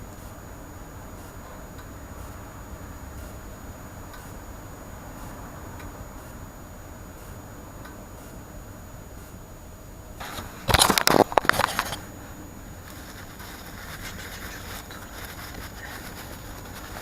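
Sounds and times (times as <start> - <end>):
hard objects knocking and scraping: 10.3 - 12.0.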